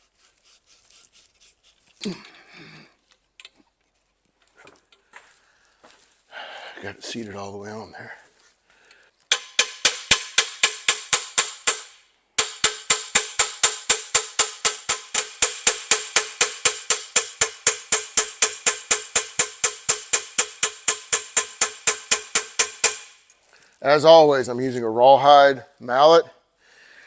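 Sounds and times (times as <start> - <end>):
mallet tapping metal tube: 9.3 - 23.2.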